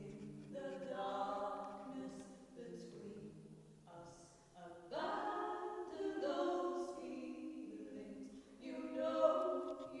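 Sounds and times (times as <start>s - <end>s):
voices singing wordless harmony: 3.9s - 10.0s.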